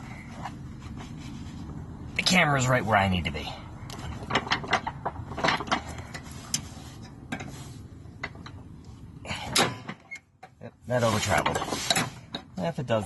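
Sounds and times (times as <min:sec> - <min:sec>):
metal clicks and clanks: 0:03.9 - 0:07.5.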